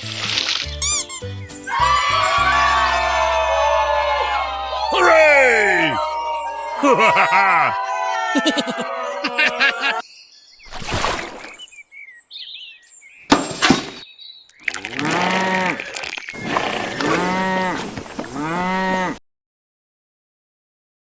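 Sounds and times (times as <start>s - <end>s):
low animal calls: 14.6s - 19.2s.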